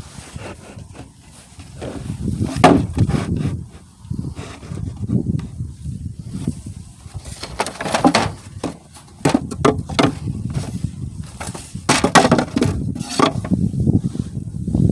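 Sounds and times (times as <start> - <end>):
wooden box knocking and scraping: 0.4 - 5.5, 7.2 - 13.6.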